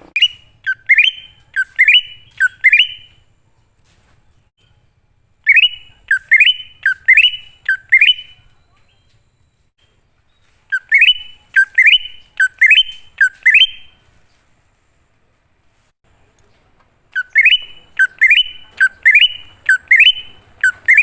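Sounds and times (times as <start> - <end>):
bird whistling song: 0.2 - 3.2, 5.4 - 14.0, 17.1 - 21.0.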